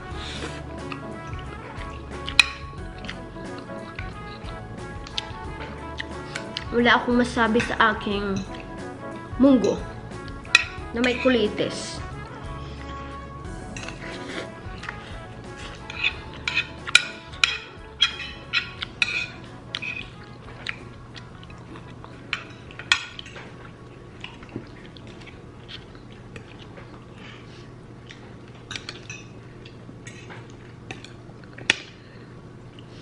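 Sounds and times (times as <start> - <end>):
chewing: 0.3 - 6.7, 10.2 - 10.8, 13.8 - 33.0
cutlery clinking on plate: 15.8 - 20.1, 28.6 - 29.4.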